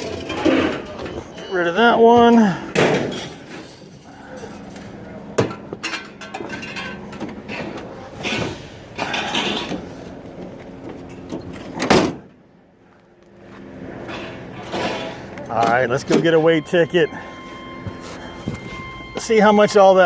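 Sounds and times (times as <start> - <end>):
scrap metal clanks and knocks: 0.0 - 1.4, 2.7 - 10.1, 14.0 - 16.4
steady low hum: 0.0 - 20.0.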